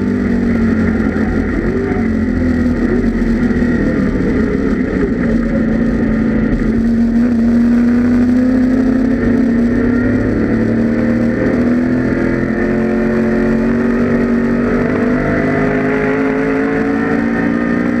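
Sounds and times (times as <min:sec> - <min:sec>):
race car engine running hard: 0:00.0 - 0:18.0.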